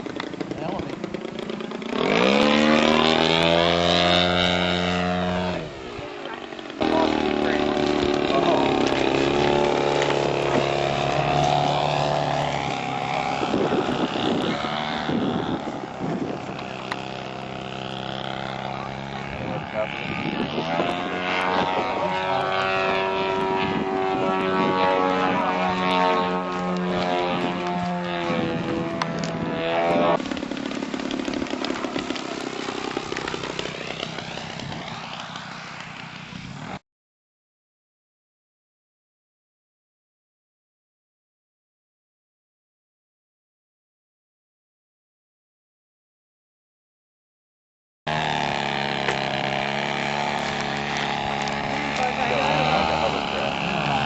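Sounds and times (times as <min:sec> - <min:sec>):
model airplane engine flying past: 0:00.0 - 0:36.8, 0:48.1 - 0:54.0.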